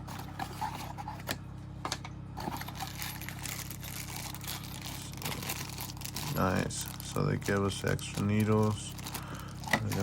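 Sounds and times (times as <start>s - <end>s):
plastic rustling: 2.4s - 10.0s.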